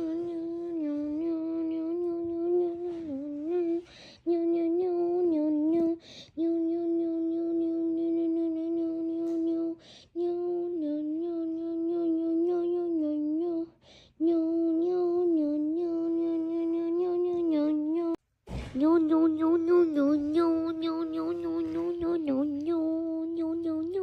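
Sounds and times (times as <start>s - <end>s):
person humming a steady note: 0.0s - 18.2s.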